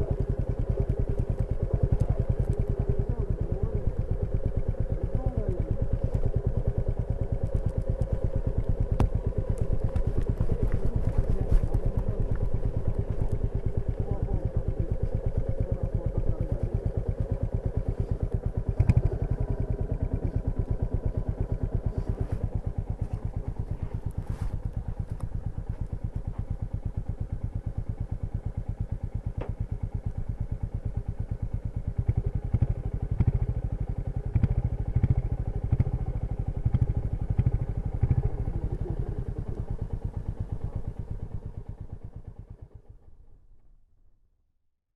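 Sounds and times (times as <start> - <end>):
motorcycle engine thumping: 0.1 - 30.3.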